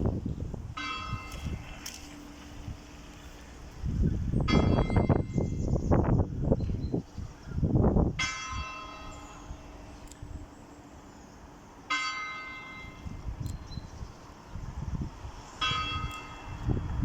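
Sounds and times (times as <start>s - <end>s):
church bell tolling: 0.8s - 1.7s, 4.4s - 5.5s, 8.2s - 9.8s, 11.9s - 13.2s, 15.6s - 16.7s.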